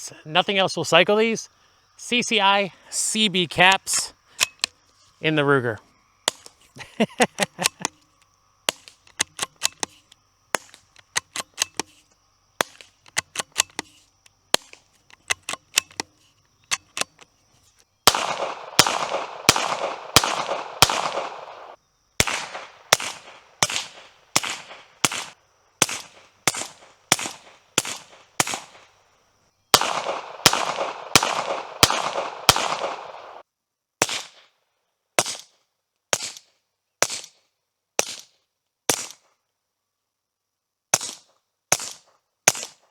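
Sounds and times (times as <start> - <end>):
quiet rifle clicks: 4.3 - 4.9, 6.3 - 29.0, 29.7 - 33.4
suppressed rifle shots ringing: 18.0 - 28.9, 29.7 - 33.4.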